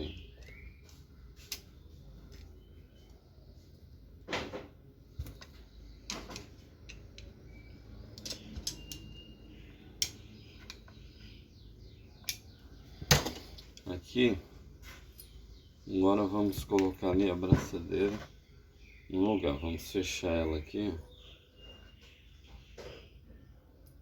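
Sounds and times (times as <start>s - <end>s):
light clicks and taps of parts: 0.2s - 3.2s, 5.2s - 7.4s, 8.1s - 9.2s, 10.0s - 11.2s, 12.2s - 13.9s.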